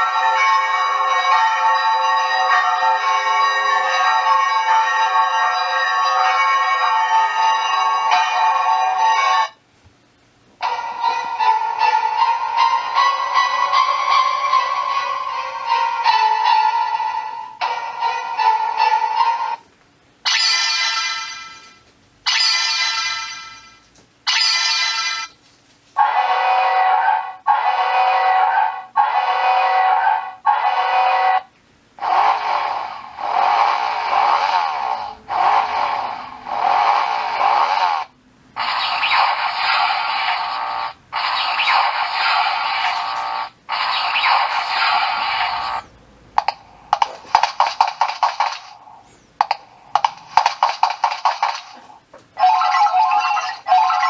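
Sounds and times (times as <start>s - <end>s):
alarm chirps: 38.6s - 40.6s.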